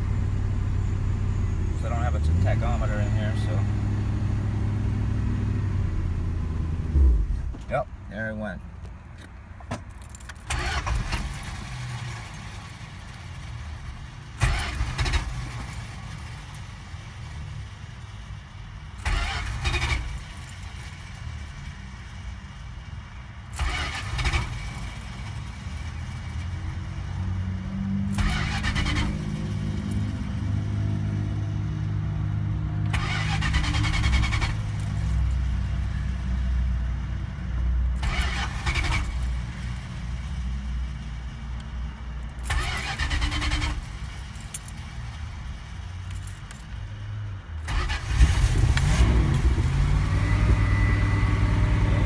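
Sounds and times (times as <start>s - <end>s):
car engine firing up: 0.0s - 7.7s, 10.0s - 17.8s, 19.0s - 21.6s, 23.6s - 31.0s, 32.8s - 35.6s, 38.0s - 41.0s, 42.4s - 46.1s, 47.6s - 52.0s
car engine cranking on starter: 10.2s - 13.8s, 14.4s - 17.4s, 19.0s - 21.2s, 23.6s - 26.6s, 28.1s - 30.2s, 32.8s - 35.3s, 38.0s - 40.0s, 42.4s - 45.0s, 47.6s - 52.0s.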